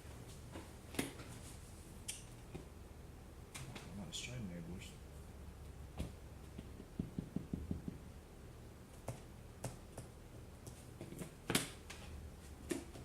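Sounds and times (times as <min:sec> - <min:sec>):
cards tapping on a table: 0:06.0 - 0:08.0.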